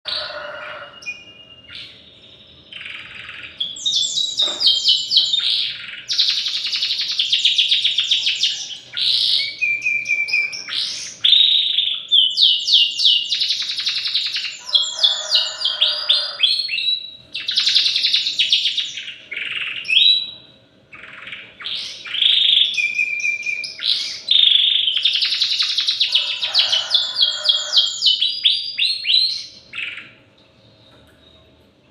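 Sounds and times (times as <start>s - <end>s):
canary singing: 0.0s - 31.4s.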